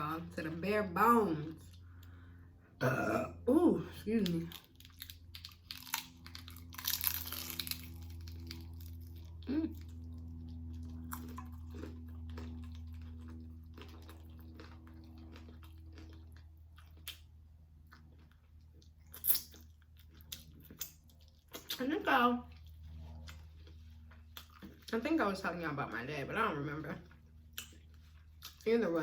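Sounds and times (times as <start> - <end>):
steady low hum: 0.0 - 29.0
chewing and biting food: 4.2 - 25.0, 27.0 - 28.8.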